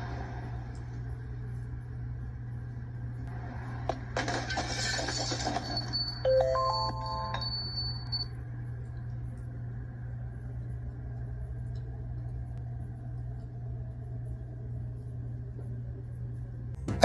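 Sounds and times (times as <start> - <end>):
steady low hum: 0.0 - 17.0
doorbell chime: 6.2 - 8.2.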